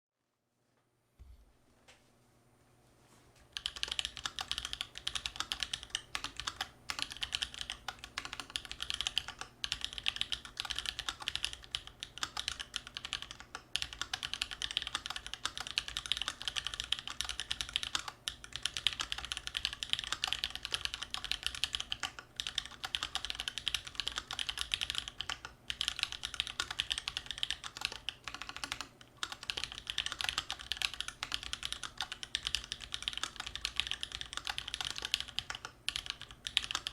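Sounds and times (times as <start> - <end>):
mechanical keyboard typing: 3.5 - 36.9.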